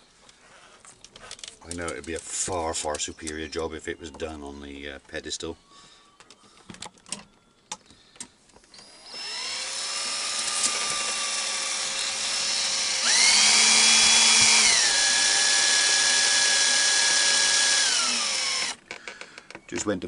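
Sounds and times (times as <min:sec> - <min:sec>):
electric drill whining: 0:08.6 - 0:19.2.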